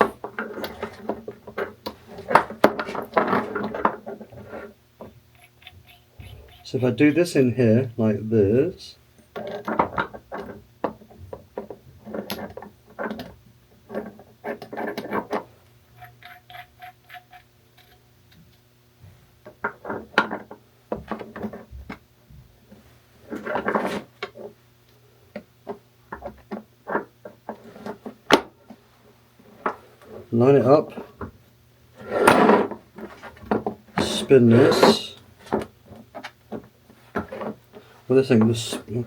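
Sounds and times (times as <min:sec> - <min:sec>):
metal pipe fittings clinking: 0:05.3 - 0:07.4.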